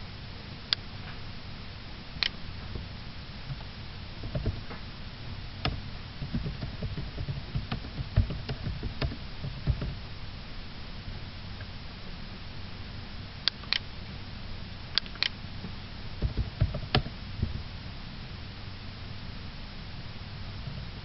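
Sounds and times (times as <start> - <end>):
steady low hum: 0.0 - 21.0
low knocks and thumps: 2.6 - 4.9, 5.6 - 10.0, 16.2 - 17.7
sharp clicks: 5.6 - 10.0, 13.5 - 13.9, 14.9 - 15.4, 16.2 - 17.2.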